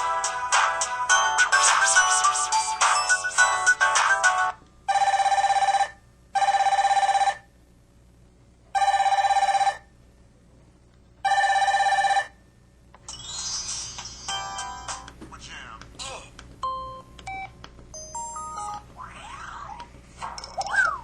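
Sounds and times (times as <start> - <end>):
ringtone melody: 0.0 - 5.8, 13.1 - 15.1, 18.0 - 19.4
warbling phone ringtone: 1.1 - 7.4, 8.8 - 9.8, 11.3 - 12.3, 18.0 - 19.4.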